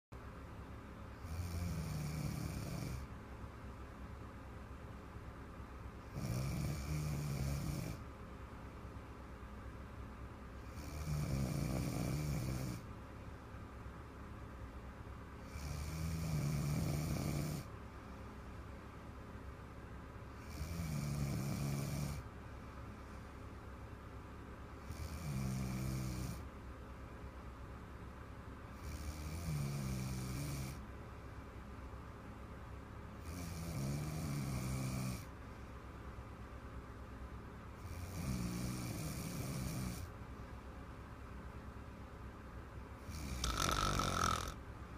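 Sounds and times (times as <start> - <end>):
girl snoring: 1.2 - 3.1, 6.1 - 8.0, 10.7 - 12.8, 15.4 - 17.7, 20.4 - 22.2, 24.8 - 26.4, 33.3 - 35.3, 43.1 - 44.6
quiet breathing: 15.3 - 19.1, 20.2 - 23.9, 33.2 - 36.3.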